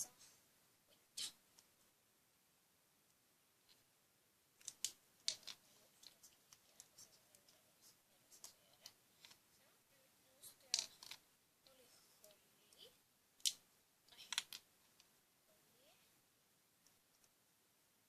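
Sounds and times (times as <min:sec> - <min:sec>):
small sharp clicks and crackles: 0:04.6 - 0:07.6, 0:10.6 - 0:11.8, 0:12.7 - 0:15.1.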